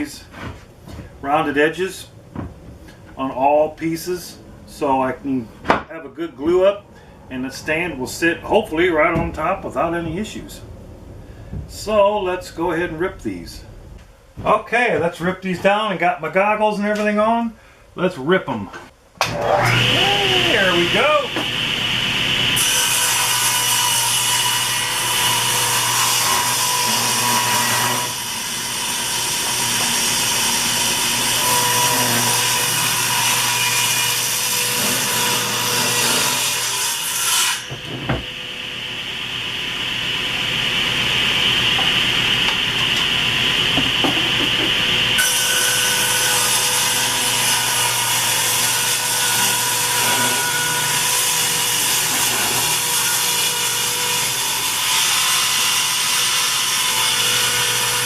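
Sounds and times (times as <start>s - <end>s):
table saw cutting wood: 19.2s - 58.0s.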